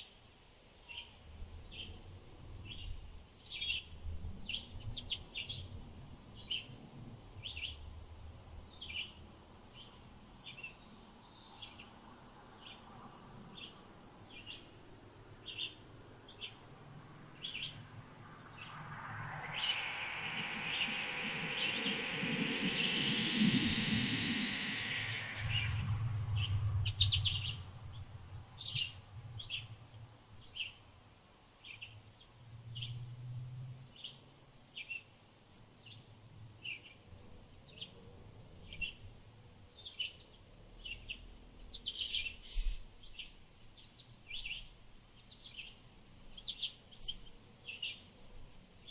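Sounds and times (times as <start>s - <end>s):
birds chirping: 13.5s - 30.8s
rushing noise: 15.8s - 29.6s
insects ticking: 16.4s - 41.8s.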